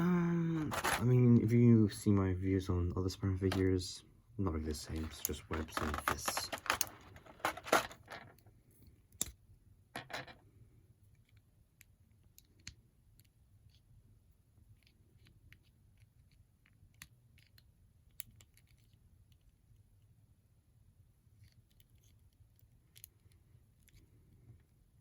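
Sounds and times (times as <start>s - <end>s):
rustling: 0.6s - 1.3s, 4.8s - 8.3s.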